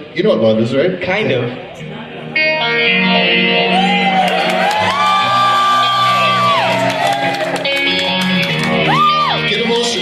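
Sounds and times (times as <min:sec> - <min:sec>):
sustained electric guitar chords: 0:01.8 - 0:10.0.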